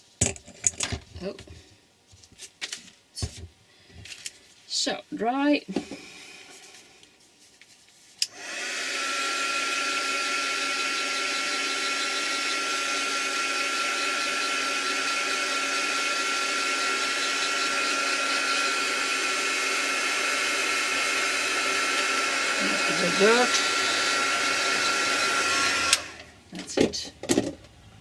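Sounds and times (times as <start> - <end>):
hot-air blower whining: 8.2 - 26.5
hot-air blower switch click: 25.8 - 26.3.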